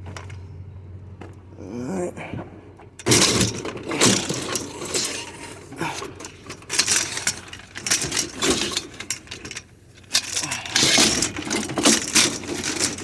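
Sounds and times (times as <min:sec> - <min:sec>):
scrap metal clattering: 0:03.0 - 0:13.0.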